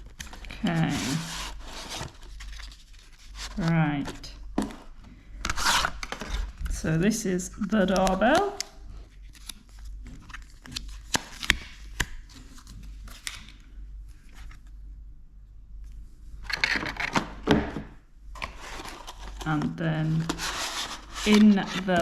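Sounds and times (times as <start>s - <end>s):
packaging rustling and crinkling: 0.0s - 6.8s, 18.3s - 22.0s.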